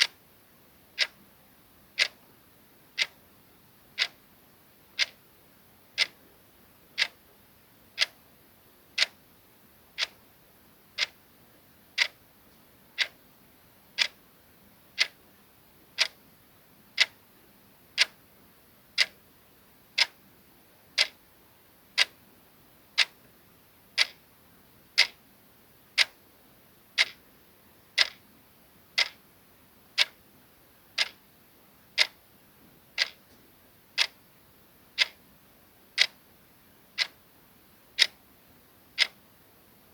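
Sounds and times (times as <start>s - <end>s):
clock ticking: 1.0s - 1.2s, 2.0s - 2.2s, 3.0s - 3.2s, 4.0s - 4.2s, 5.0s - 5.2s, 6.0s - 6.2s, 7.0s - 7.2s, 8.0s - 8.2s, 9.0s - 9.2s, 10.0s - 10.2s, 11.0s - 11.2s, 12.0s - 12.2s, 13.0s - 13.2s, 14.0s - 14.2s, 15.0s - 15.2s, 16.0s - 16.2s, 17.0s - 17.2s, 18.0s - 18.2s, 19.0s - 19.2s, 20.0s - 20.2s, 21.0s - 21.2s, 22.0s - 22.2s, 23.0s - 23.2s, 24.0s - 24.2s, 25.0s - 25.2s, 26.0s - 26.2s, 27.0s - 27.2s, 28.0s - 28.2s, 29.0s - 29.2s, 30.0s - 30.2s, 31.0s - 31.2s, 32.0s - 32.2s, 33.0s - 33.3s, 34.0s - 34.2s, 35.0s - 35.2s, 36.0s - 36.2s, 37.0s - 37.2s, 38.0s - 38.2s, 39.0s - 39.2s.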